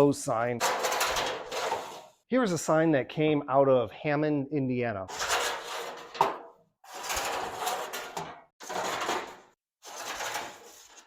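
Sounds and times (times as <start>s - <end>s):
metal signs scraping together: 0.6s - 2.2s, 5.1s - 11.0s.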